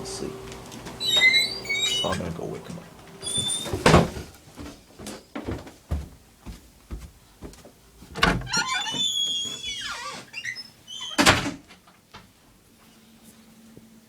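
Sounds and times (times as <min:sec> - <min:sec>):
door creaking: 0:00.8 - 0:02.5, 0:03.2 - 0:04.2, 0:08.2 - 0:11.8
light footsteps: 0:02.6 - 0:08.6
door banging: 0:08.1 - 0:09.0.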